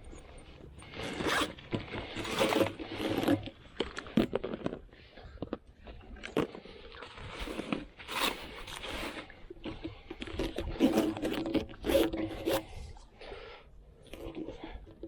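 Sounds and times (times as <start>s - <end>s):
scraping and rubbing of inflatable boat: 0.0s - 5.1s, 6.3s - 13.1s.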